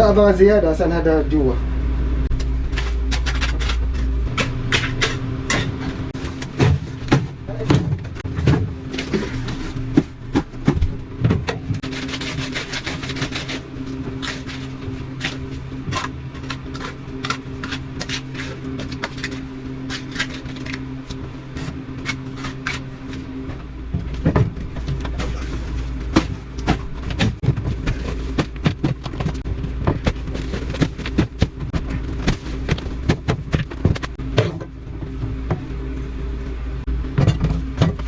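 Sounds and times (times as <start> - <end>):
deep rumble: 0.0 - 38.0
steady machine hum: 0.0 - 38.0
tools scraping on wet concrete: 2.7 - 6.7, 11.8 - 23.4.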